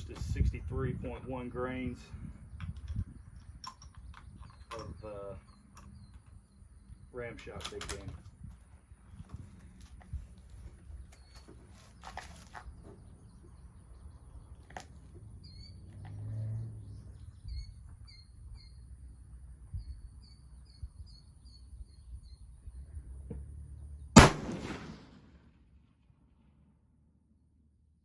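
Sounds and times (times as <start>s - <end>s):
small birds chirping: 0.0s - 24.2s
rifle shot echoing: 24.2s - 25.6s.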